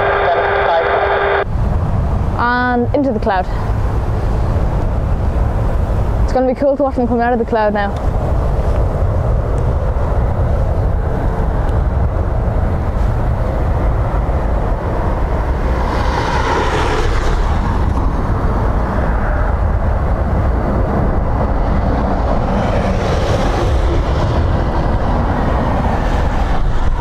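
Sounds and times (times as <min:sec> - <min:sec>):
storm wind buffeting microphone: 0:00.0 - 0:27.0.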